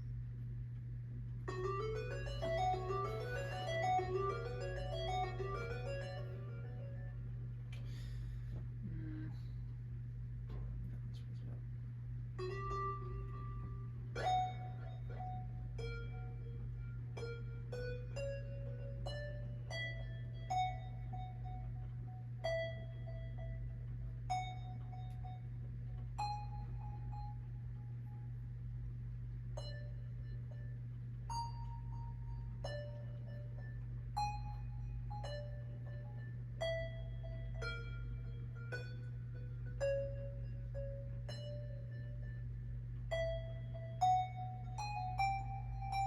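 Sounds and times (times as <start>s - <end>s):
electronic melody of single notes: 1.5s - 7.5s, 12.4s - 28.2s, 29.6s - 46.0s.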